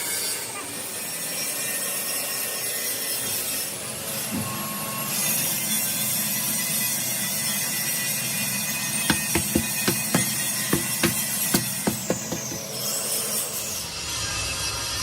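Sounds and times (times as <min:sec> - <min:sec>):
hand tool rasping and scraping: 0:09.1 - 0:13.0.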